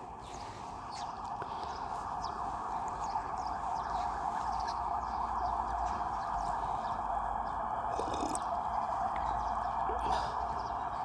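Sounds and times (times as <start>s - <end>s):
small birds chirping: 0.2s - 7.6s.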